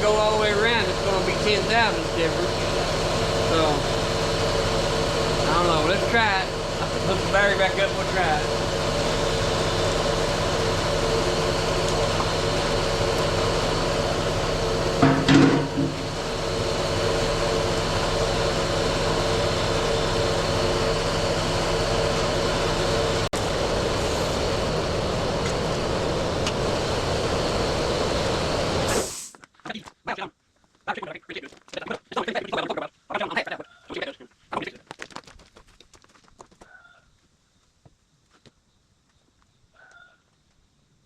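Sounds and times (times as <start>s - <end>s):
excavator engine running: 0.0s - 29.3s.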